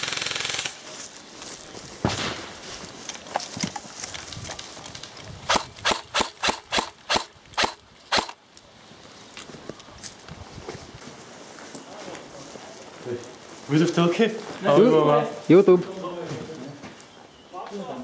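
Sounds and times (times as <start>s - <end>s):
airsoft gun burst: 0.0s - 0.9s, 5.5s - 8.4s
airsoft gun single shots: 5.5s - 8.4s.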